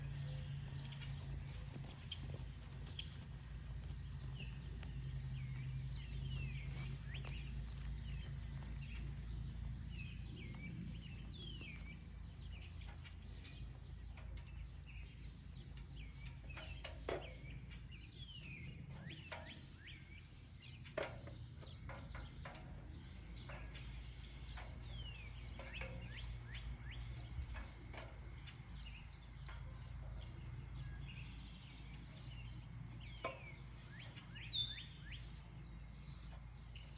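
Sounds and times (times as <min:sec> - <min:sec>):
low rumble: 0:00.0 - 0:16.4
small birds chirping: 0:00.0 - 0:36.9.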